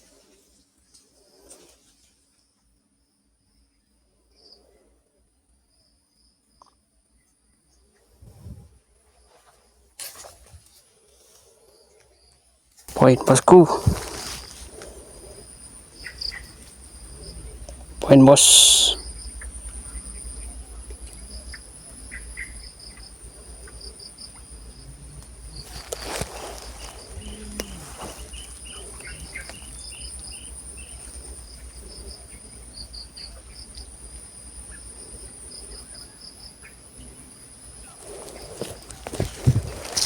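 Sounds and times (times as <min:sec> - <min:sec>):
rustle: 0:00.0 - 0:02.8, 0:07.3 - 0:40.0
insects chirring: 0:00.0 - 0:40.0
handling noise: 0:13.0 - 0:15.0, 0:25.6 - 0:29.8, 0:38.0 - 0:40.0.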